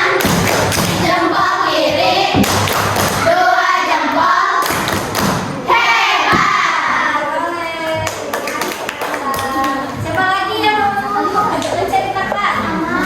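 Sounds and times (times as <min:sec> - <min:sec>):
children singing: 0:00.0 - 0:07.7
thumps: 0:06.2 - 0:06.9.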